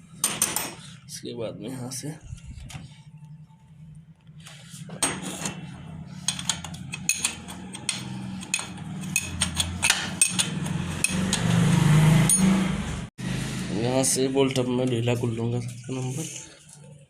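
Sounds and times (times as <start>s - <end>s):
steady low hum: 0.0s - 10.5s.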